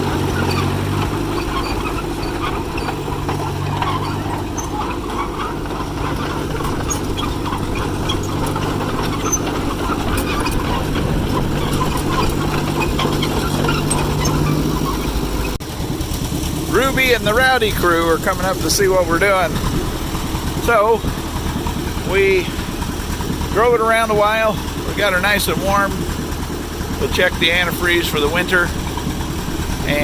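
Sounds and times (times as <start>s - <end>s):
dozer engine running: 0.0s - 30.0s.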